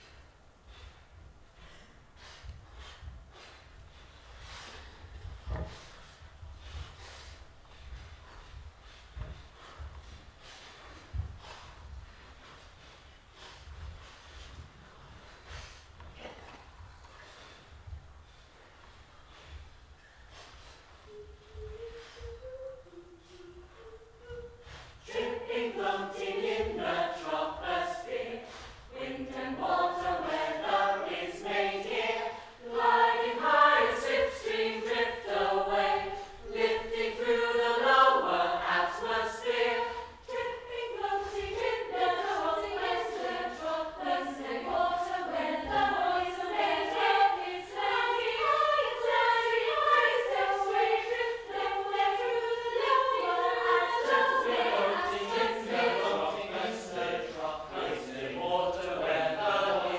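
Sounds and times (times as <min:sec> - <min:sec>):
choir singing a cappella: 0:21.0 - 0:59.9.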